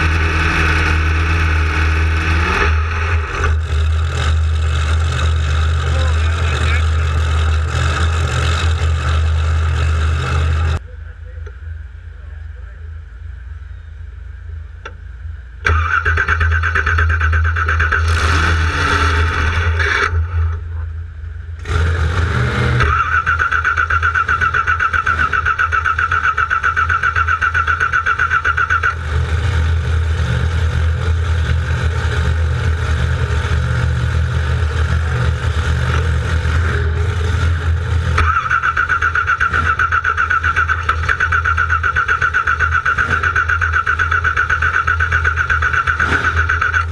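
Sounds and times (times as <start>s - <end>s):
car engine cranking by starter motor: 15.6s - 20.7s, 21.6s - 29.2s, 34.4s - 46.9s.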